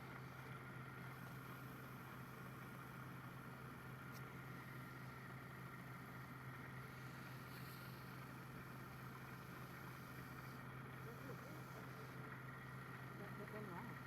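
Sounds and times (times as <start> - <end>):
lathe motor humming: 0.0 - 14.0.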